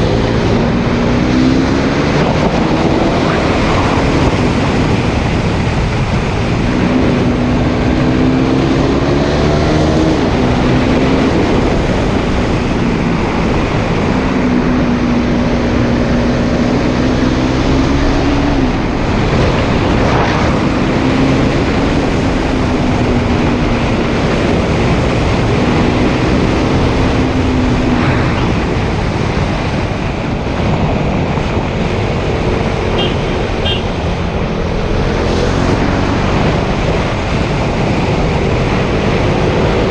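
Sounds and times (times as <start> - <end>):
motorcycle engine revving: 0.0 - 30.8
wind and road noise: 0.0 - 39.9.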